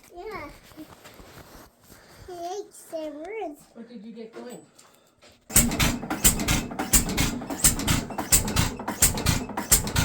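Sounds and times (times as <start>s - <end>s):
engine exhaust bangs: 5.5s - 10.0s.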